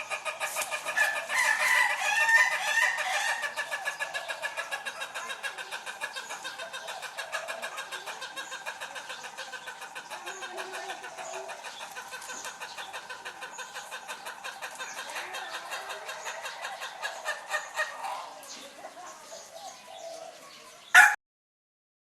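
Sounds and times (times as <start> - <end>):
rooster crowing in staccato notes: 21.0 - 21.2.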